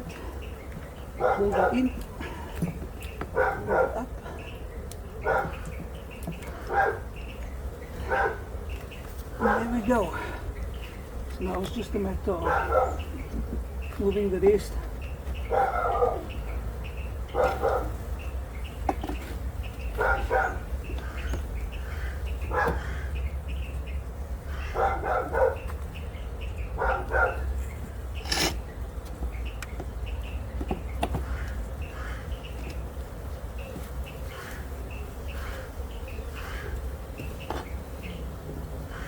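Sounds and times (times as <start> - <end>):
dog barking: 1.2 - 1.9, 3.3 - 4.1, 5.2 - 5.6, 6.6 - 7.1, 8.0 - 8.5, 9.4 - 9.8, 12.4 - 13.1, 15.5 - 16.4, 17.3 - 18.0, 20.0 - 20.7, 22.5 - 22.8, 24.7 - 25.7, 26.8 - 27.5.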